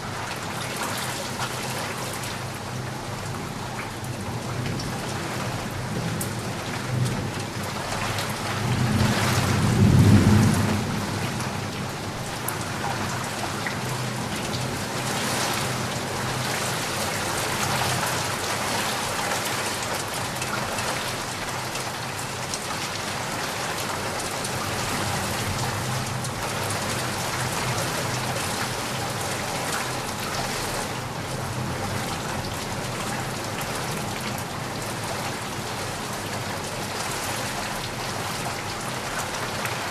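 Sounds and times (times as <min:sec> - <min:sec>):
steady rain falling: 0:00.0 - 0:39.9
low rumble of thunder: 0:06.7 - 0:14.9.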